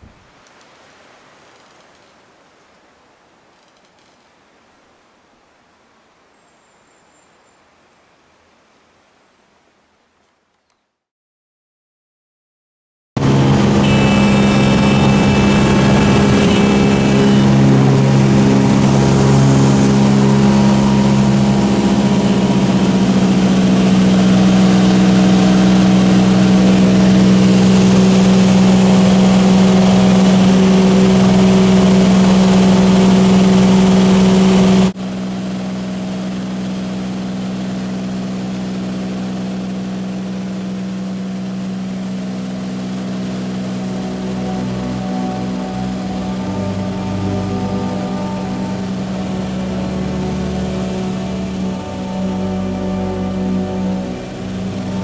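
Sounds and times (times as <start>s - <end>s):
small aircraft engine drone: 13.2s - 55.0s.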